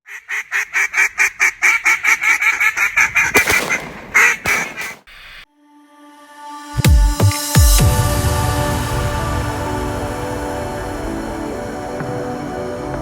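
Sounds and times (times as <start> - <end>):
duck quacks: 0.0 - 5.0.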